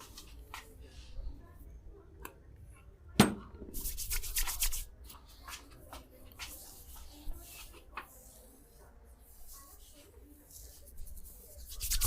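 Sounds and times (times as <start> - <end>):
hands rubbing hair: 3.8 - 8.6, 9.3 - 12.0.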